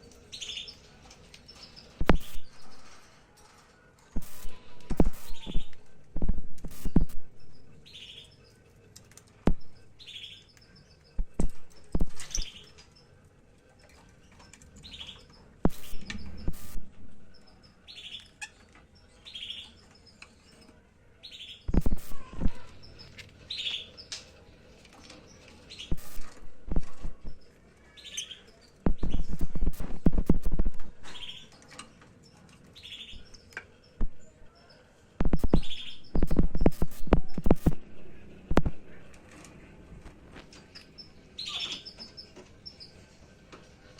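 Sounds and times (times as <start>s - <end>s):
birds chirping: 0.0s - 43.9s
sharp clicks and knocks: 2.0s - 3.0s, 8.9s - 9.8s, 11.2s - 12.9s, 15.6s - 16.9s, 28.8s - 32.6s, 35.2s - 37.8s, 38.5s - 39.6s.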